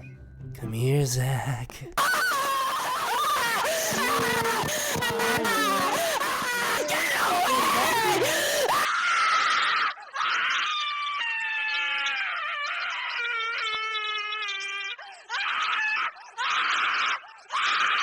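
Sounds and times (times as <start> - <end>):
person screaming: 2.0 - 10.4.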